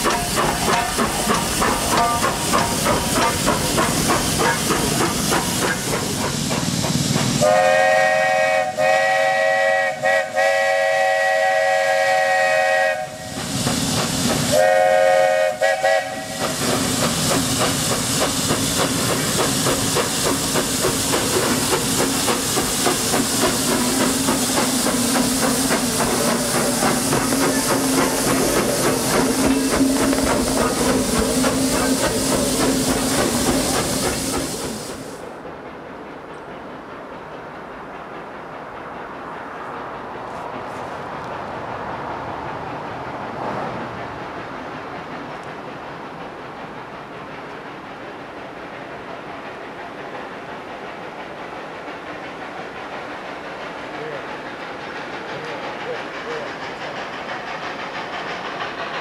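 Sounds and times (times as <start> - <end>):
pulsing hissing rushing noise: 0.0 - 10.4, 11.4 - 35.4, 38.2 - 59.0
train chord whistle: 7.4 - 13.4, 14.5 - 16.4.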